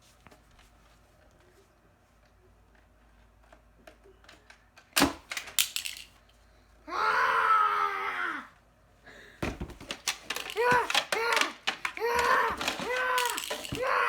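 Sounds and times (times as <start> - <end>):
child yelling: 10.5 - 14.0.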